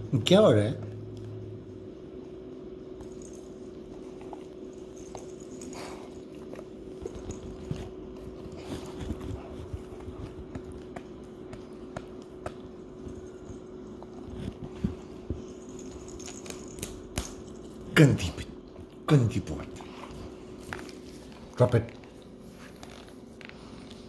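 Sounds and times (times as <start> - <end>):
dog chewing: 3.0 - 17.8.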